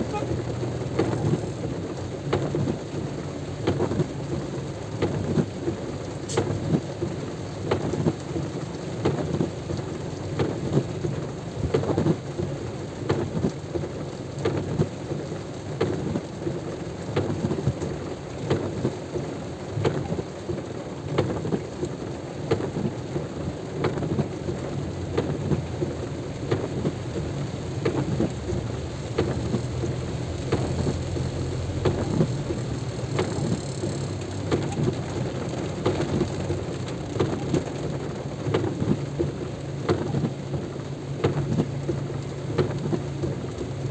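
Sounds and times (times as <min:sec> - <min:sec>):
low rain rumble: 0:00.0 - 0:43.9
raindrops tapping near microphone: 0:00.0 - 0:43.9.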